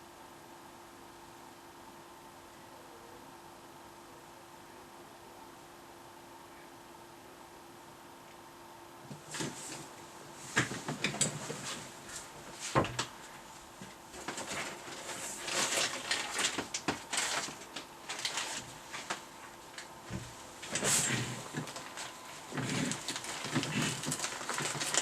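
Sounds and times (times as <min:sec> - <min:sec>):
objects being handled: 0:13.8 - 0:25.0.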